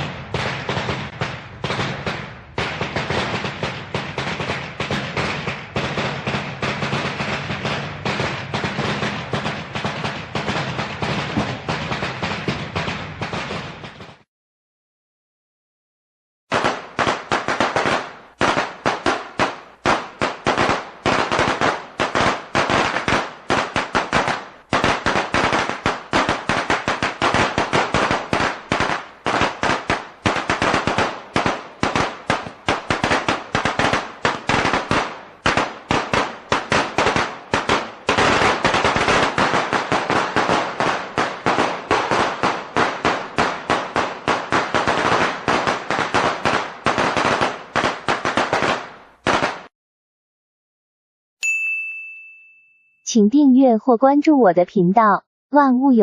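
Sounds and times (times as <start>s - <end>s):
firecrackers crackling: 0.0s - 14.1s, 16.5s - 49.7s.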